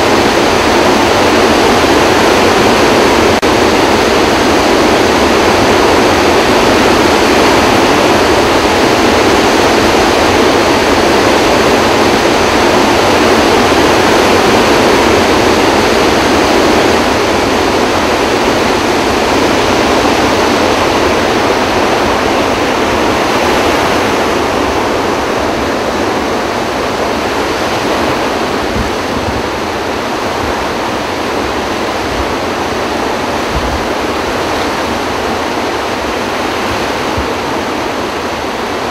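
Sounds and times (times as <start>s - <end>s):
roar of rushing water: 0.0s - 38.9s.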